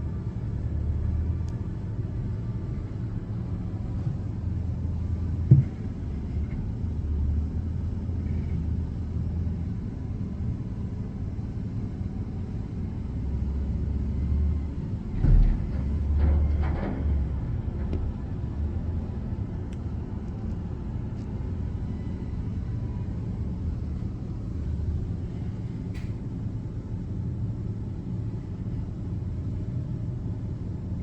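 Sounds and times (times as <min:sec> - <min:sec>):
heavy thump: 0:05.5 - 0:05.8.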